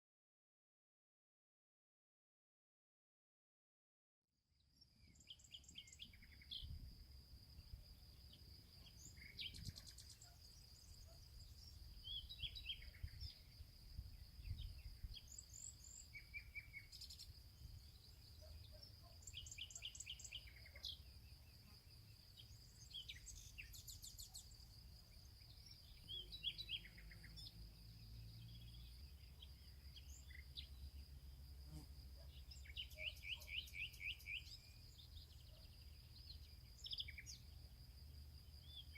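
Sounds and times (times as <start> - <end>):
bird chirps: 4.6 - 6.9, 8.1 - 31.0, 31.7 - 37.7.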